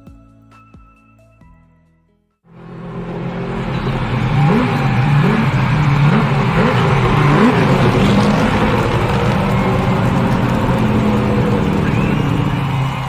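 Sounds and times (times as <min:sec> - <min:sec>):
music: 0:00.0 - 0:02.5
car engine revving: 0:02.5 - 0:13.0.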